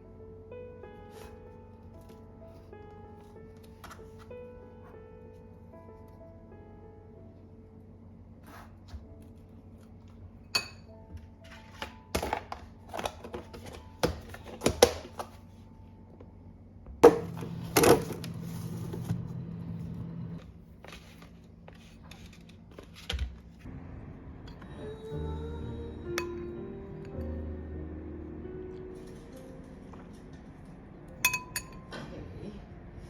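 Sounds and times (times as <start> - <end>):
quiet background music: 0.0 - 33.0
low steady hum: 12.5 - 33.0.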